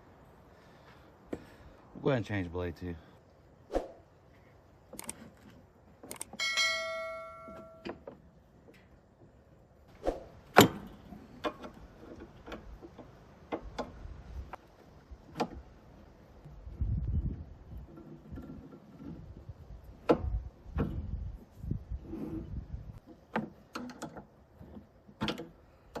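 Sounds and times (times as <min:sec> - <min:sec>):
struck metal ringing: 0:06.4 - 0:08.0.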